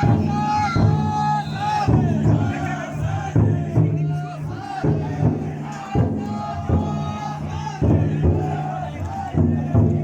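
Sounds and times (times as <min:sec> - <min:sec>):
group chanting in unison: 0:00.0 - 0:10.0
heavy drum beats: 0:00.0 - 0:10.0.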